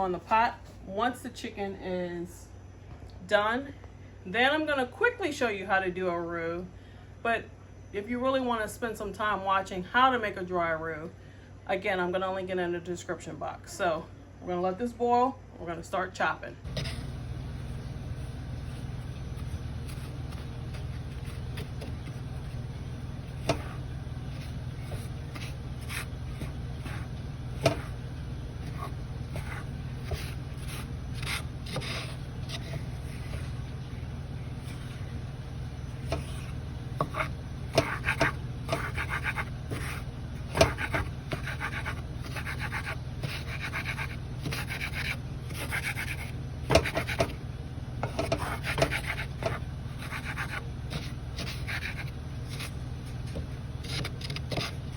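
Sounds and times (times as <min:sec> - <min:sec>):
steady low hum: 0:00.0 - 0:54.9
knife chopping on cutting board: 0:23.4 - 0:28.0, 0:36.0 - 0:47.4, 0:48.0 - 0:52.0.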